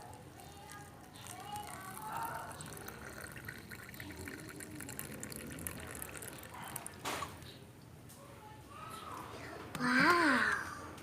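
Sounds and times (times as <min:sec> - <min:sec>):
water splashing and trickling: 0:00.4 - 0:07.4
water gushing: 0:01.2 - 0:07.3.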